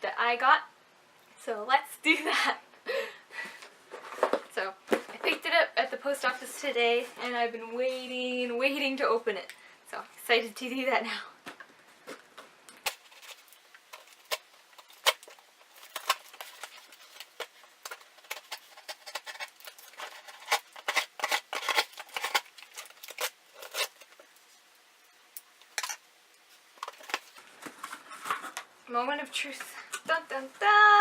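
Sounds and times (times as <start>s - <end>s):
packaging crinkling and rustling: 11.7s - 24.7s, 25.8s - 28.7s
packaging clicks: 12.8s - 24.1s.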